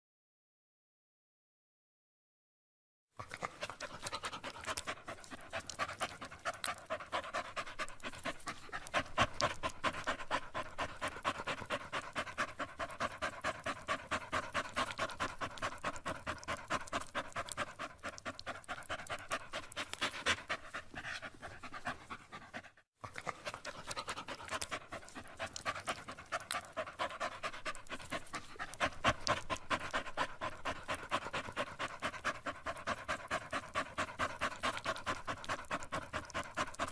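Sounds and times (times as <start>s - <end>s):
dog panting: 3.2s - 36.9s.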